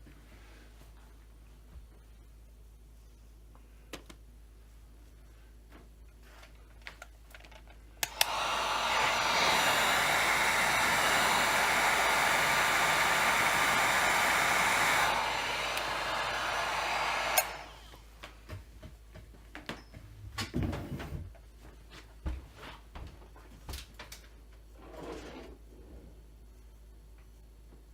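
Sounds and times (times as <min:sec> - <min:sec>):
heat gun switch click: 0:08.0 - 0:08.6, 0:15.7 - 0:17.7
heat gun blowing: 0:08.0 - 0:18.0.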